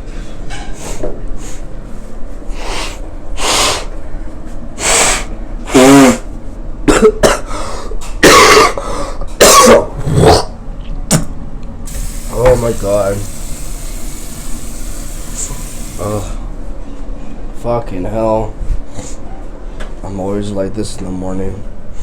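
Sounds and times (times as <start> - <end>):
person coughing and clearing throat: 6.8 - 10.5.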